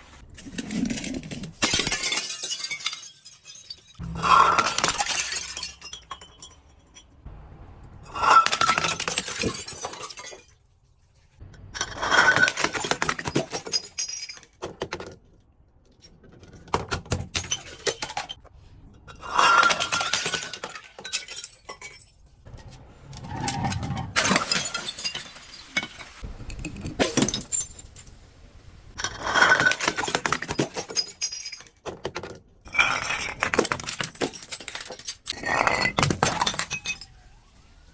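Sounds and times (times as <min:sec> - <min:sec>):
glass bottles shattering: 0:00.5 - 0:07.2, 0:08.1 - 0:10.7, 0:11.8 - 0:15.1, 0:16.9 - 0:18.4, 0:19.1 - 0:22.4, 0:23.2 - 0:28.1, 0:29.0 - 0:37.5
glass shards crunching and clinking: 0:00.5 - 0:07.2, 0:08.1 - 0:10.6, 0:11.8 - 0:14.6, 0:19.1 - 0:22.4, 0:23.5 - 0:26.2, 0:26.9 - 0:28.0, 0:29.0 - 0:31.8, 0:32.7 - 0:37.2.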